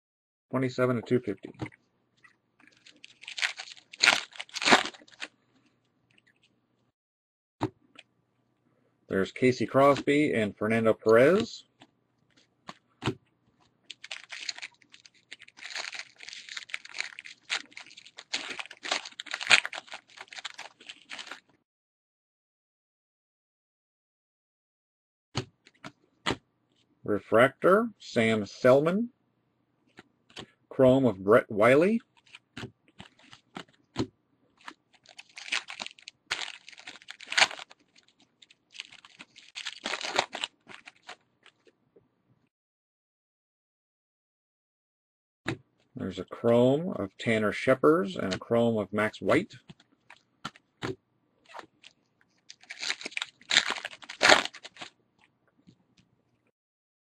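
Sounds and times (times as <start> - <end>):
trading cards rustling and clicking: 1.5 - 5.3, 13.9 - 21.5, 32.1 - 41.7, 51.5 - 54.9
foil wrappers crinkling: 2.6 - 5.3, 13.8 - 21.6, 33.0 - 33.8, 34.6 - 41.7, 51.5 - 55.0.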